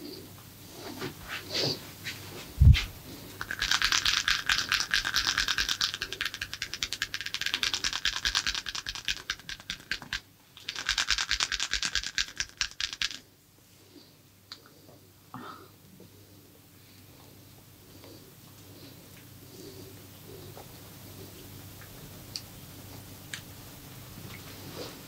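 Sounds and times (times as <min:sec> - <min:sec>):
rhythmic massage scratching strokes: 0:00.8 - 0:13.2.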